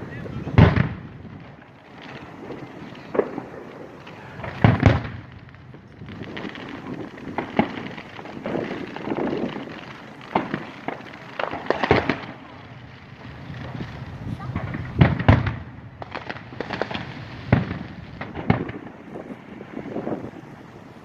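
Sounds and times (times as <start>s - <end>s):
fireworks bangs and booms: 0.0s - 21.0s
fireworks crackling: 0.0s - 21.0s.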